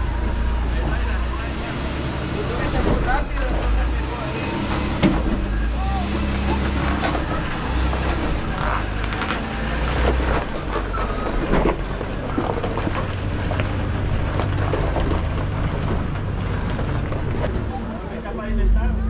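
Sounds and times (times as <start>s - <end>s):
truck engine running at low revs: 0.0s - 19.0s
knocks and scrapes on rocks: 6.9s - 17.5s.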